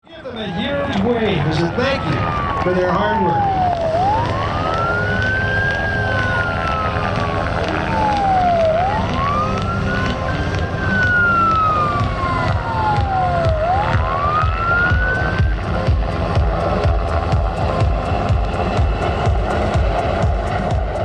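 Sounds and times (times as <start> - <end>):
helicopter rotors rumbling: 0.0 - 21.0
helicopter siren wailing: 0.2 - 21.0.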